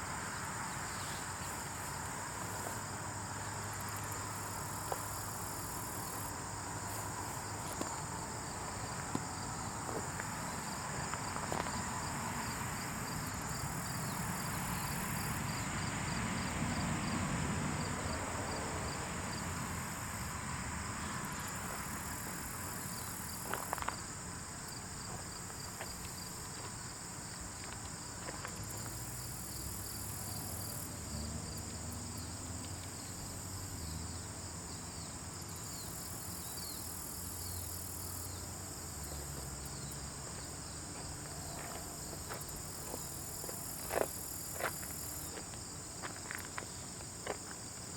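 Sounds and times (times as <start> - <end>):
high-pitched insect trill: 28.0 - 46.9
faint ticks: 32.6 - 33.0.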